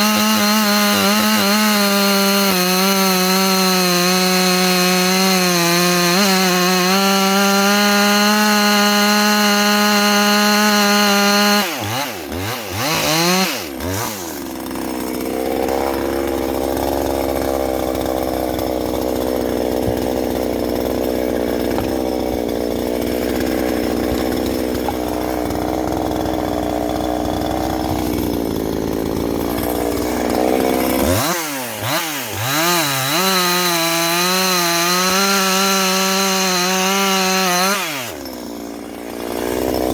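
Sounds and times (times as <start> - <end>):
chainsaw revving and cutting wood: 0.0 - 39.9.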